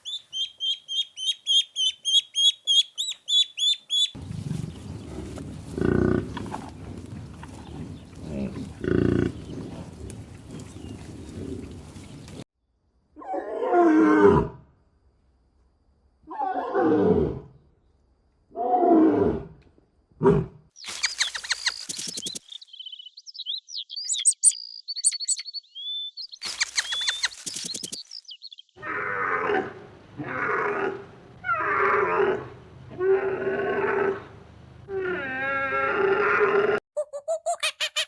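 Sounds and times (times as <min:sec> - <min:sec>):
high chirping: 0:00.0 - 0:05.0, 0:20.8 - 0:28.8
clicky noise: 0:26.5 - 0:28.1.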